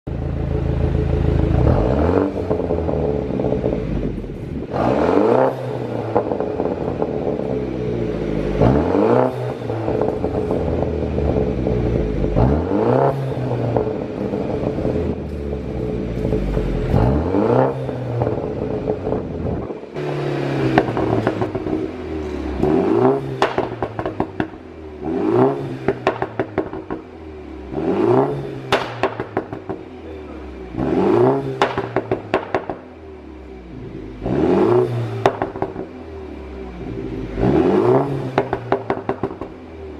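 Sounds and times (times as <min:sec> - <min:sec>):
car engine revving: 0:00.1 - 0:39.9
exhaust pops and crackles: 0:20.7 - 0:24.7, 0:25.8 - 0:27.2, 0:28.7 - 0:30.1, 0:31.6 - 0:32.9, 0:35.2 - 0:36.0, 0:38.2 - 0:39.6.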